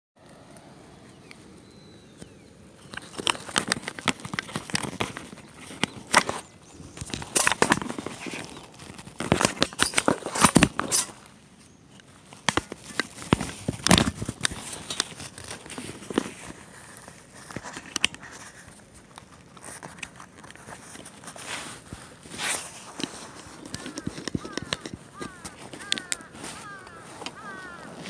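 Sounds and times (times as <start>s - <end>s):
clicks knocks and rustling: 2.9s - 11.2s, 22.9s - 27.8s.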